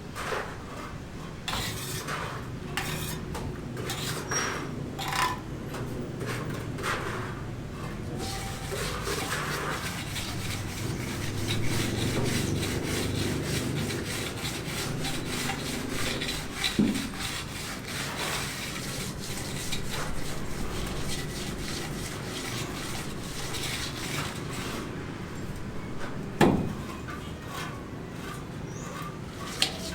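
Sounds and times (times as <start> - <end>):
rhythmic scraping strokes: 6.2 - 25.0, 26.8 - 29.9.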